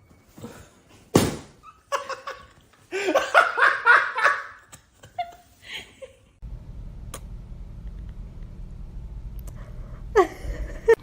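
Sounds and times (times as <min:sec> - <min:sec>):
steady low rumble: 0:06.4 - 0:11.0
person laughing: 0:10.1 - 0:11.0.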